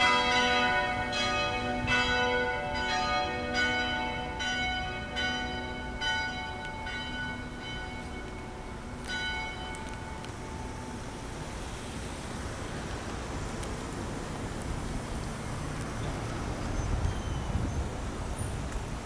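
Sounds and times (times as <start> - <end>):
church bells ringing: 0.0 - 11.8.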